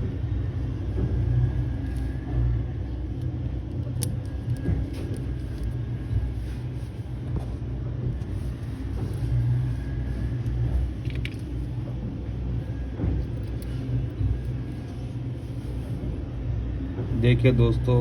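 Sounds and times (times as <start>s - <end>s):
low background rumble: 0.0s - 18.0s.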